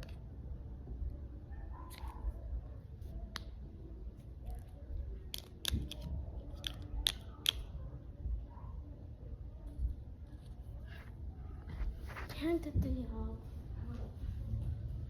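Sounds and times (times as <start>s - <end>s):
small objects clicking and snapping: 5.3s - 7.7s.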